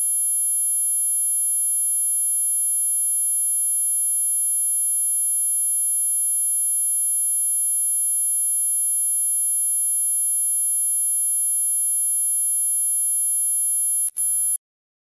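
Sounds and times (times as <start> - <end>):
click: 14.0 - 14.6.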